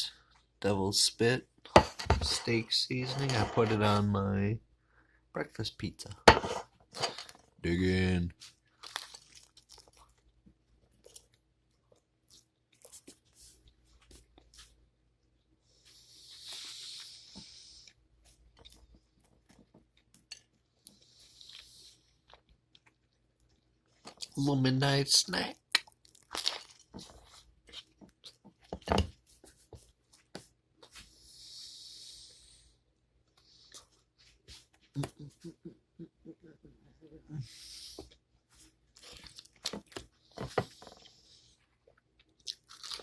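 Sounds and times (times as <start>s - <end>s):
chewing with soft crunches: 8.3s - 24.4s, 25.6s - 28.9s, 38.0s - 43.0s.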